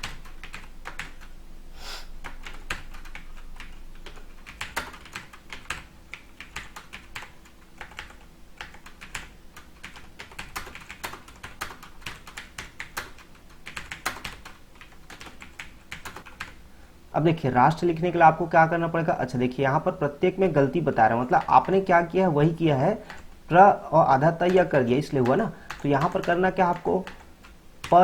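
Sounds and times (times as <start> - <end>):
computer keyboard typing: 0.0 - 1.3, 2.2 - 16.6, 21.1 - 21.9, 23.0 - 23.4, 24.1 - 28.0.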